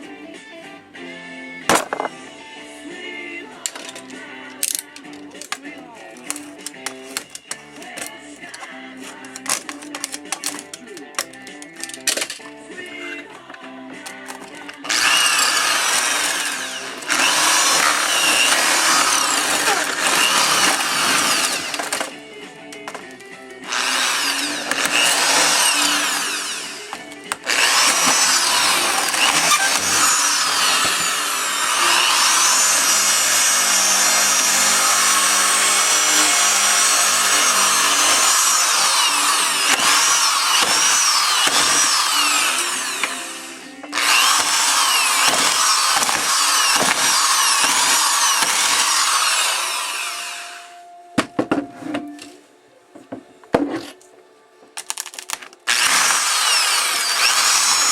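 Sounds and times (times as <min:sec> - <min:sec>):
electric hammer drill whining: 0:06.2 - 0:12.4, 0:14.1 - 0:22.2, 0:23.6 - 0:50.8, 0:55.1 - 0:57.9.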